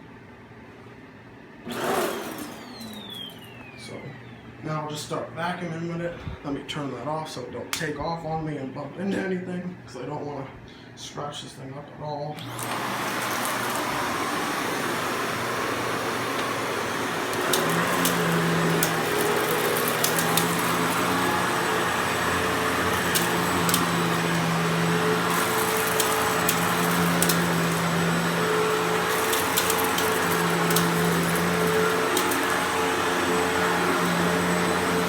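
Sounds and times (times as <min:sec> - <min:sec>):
vacuum cleaner running: 0:01.2 - 0:05.0, 0:12.4 - 0:35.0.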